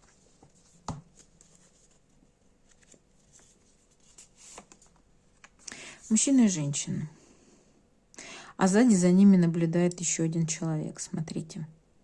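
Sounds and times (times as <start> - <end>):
soft card rustles: 0.0 - 6.3.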